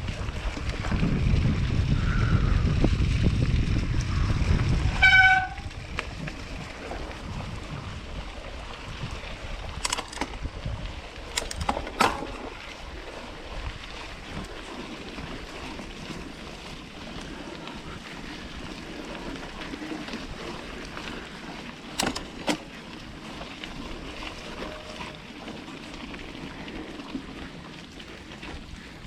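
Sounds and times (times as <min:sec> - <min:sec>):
mountain bike riding on dirt trail: 0:00.0 - 0:29.0.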